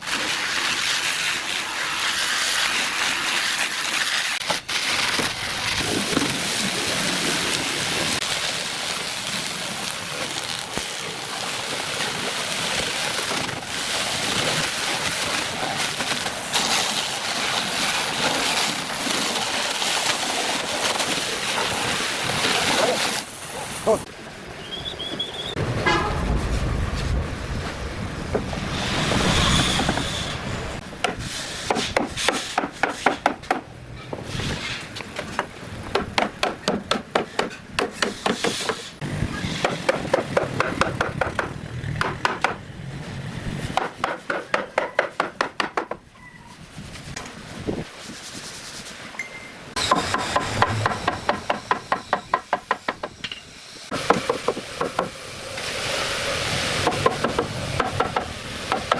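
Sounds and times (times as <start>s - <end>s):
hammering on solid wood: 43.8s - 46.0s, 54.1s - 55.2s, 56.8s - 58.9s.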